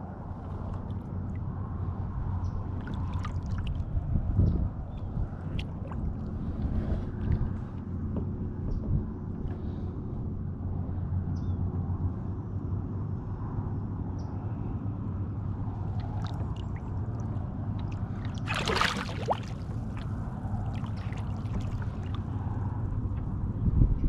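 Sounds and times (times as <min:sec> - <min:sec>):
low steady hum: 0:00.0 - 0:24.0
water sloshing against kayak: 0:00.2 - 0:08.4, 0:15.7 - 0:23.4
short splash: 0:02.8 - 0:03.8, 0:15.9 - 0:22.3.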